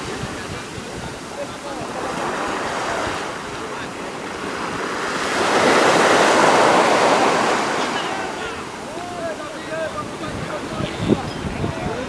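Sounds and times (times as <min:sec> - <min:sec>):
ocean wave breaking: 0:00.0 - 0:12.0.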